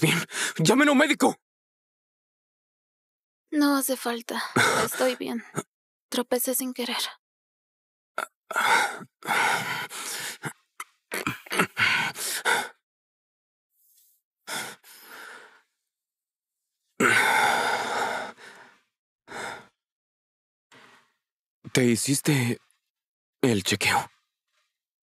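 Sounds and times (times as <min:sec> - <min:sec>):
person gasping and sighing: 0:04.5 - 0:05.3, 0:08.5 - 0:12.8, 0:17.0 - 0:19.7.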